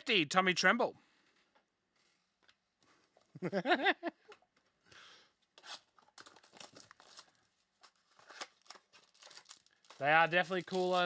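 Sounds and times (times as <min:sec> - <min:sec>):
card packs tearing and rustling: 0:06.0 - 0:11.0.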